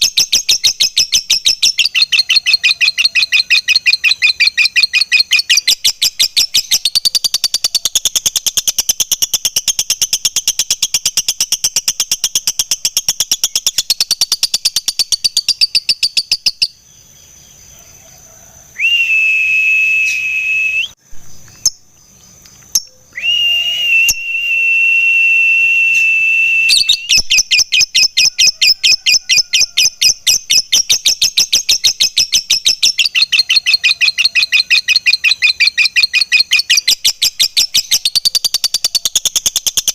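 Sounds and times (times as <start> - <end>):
lovebird chattering song: 0.0 - 17.6, 26.7 - 39.9
high whistle-like bird tone: 18.8 - 21.0, 22.8 - 39.2.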